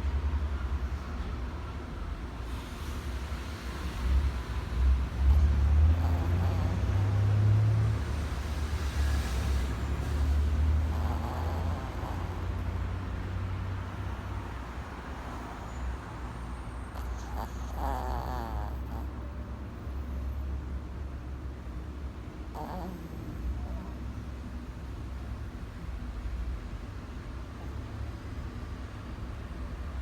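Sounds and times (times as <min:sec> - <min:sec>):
dog snoring: 0:04.2 - 0:19.4, 0:22.4 - 0:24.3, 0:27.4 - 0:27.9.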